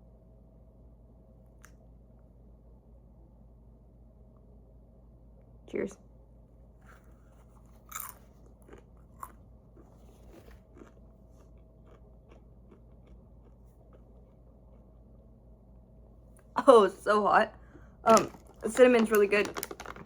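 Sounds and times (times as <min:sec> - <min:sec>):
chewing crunches: 0:06.8 - 0:15.0
person biting crunchy snack: 0:06.9 - 0:14.4.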